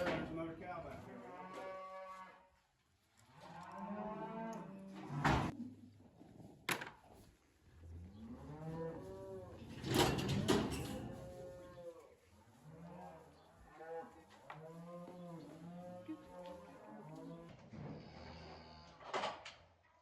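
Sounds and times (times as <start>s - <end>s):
cattle mooing: 8.2s - 9.6s.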